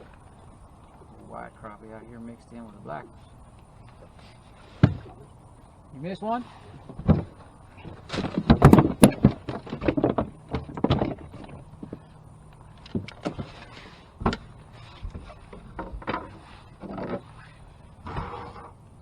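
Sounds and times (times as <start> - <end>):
gear knocking against boat: 3.9 - 5.4, 6.3 - 18.8.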